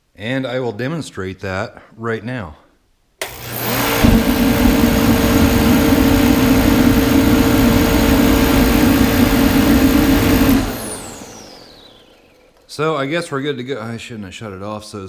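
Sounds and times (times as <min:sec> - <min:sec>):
heater burner roaring: 0:03.2 - 0:12.4
fan motor whine: 0:03.2 - 0:12.7.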